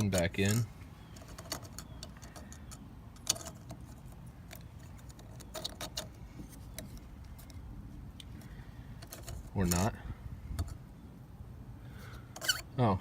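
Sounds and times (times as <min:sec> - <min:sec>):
small parts clicking and tapping: 0:00.0 - 0:07.6, 0:08.2 - 0:09.8.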